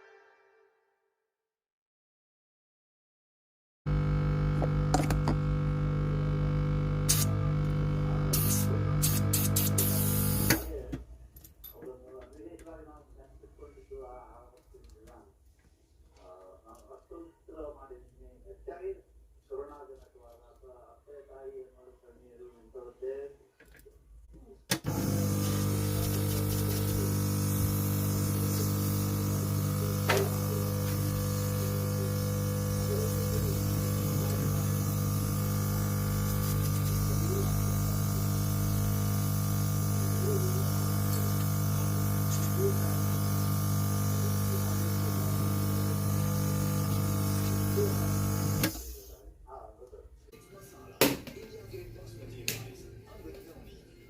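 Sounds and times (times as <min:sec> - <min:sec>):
air compressor humming: 0:03.9 - 0:10.8, 0:24.8 - 0:49.2.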